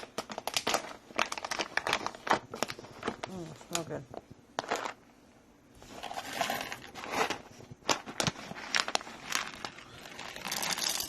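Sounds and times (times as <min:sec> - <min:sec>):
bag rustling and crinkling: 0:00.0 - 0:03.8, 0:05.8 - 0:11.0
coffee beans rattling into grinder: 0:05.9 - 0:07.4, 0:08.7 - 0:11.0.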